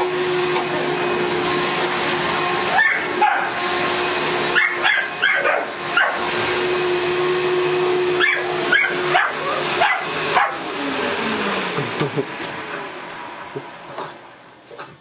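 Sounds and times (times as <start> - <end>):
vacuum cleaner running: 0.0 - 15.0
dog barking and yipping: 2.7 - 3.6, 4.5 - 6.3, 8.2 - 10.7.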